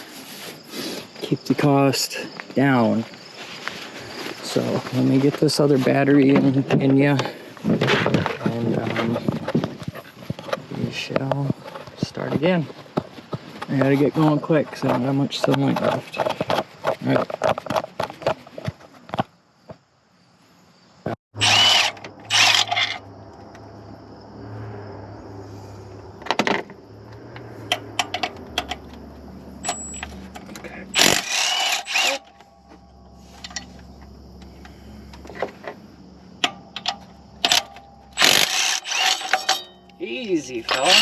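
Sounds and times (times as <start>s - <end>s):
tools and parts clattering: 3.6s - 19.2s, 21.4s - 23.0s, 26.2s - 26.8s, 27.6s - 29.0s, 29.6s - 41.0s
cordless power tool bursts: 21.4s - 23.0s, 30.9s - 32.4s, 37.5s - 39.6s, 40.7s - 41.0s.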